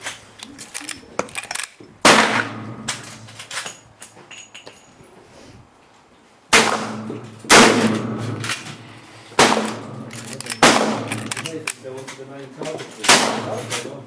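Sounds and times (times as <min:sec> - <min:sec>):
rifle shots with ringing echo: 0:02.0 - 0:03.3, 0:06.5 - 0:08.6, 0:09.4 - 0:11.6, 0:13.0 - 0:13.8.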